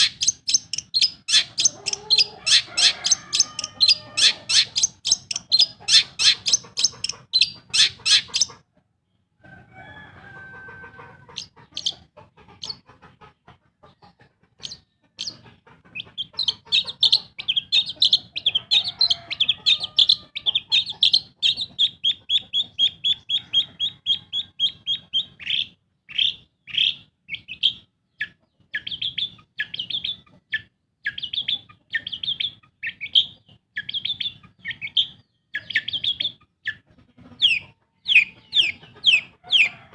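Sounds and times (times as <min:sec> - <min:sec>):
bird singing: 0:00.0 - 0:08.6, 0:24.4 - 0:36.8, 0:37.5 - 0:39.8.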